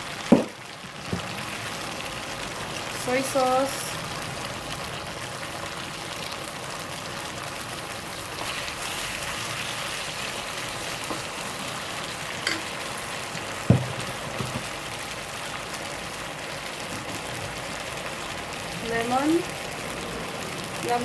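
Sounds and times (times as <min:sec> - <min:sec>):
meat sizzling in a wok: 0:00.0 - 0:21.0
knocks: 0:13.7 - 0:14.6.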